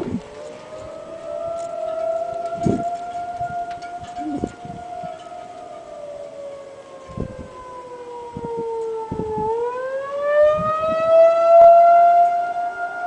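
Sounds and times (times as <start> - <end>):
warning siren wavering tone: 0.0 - 13.0.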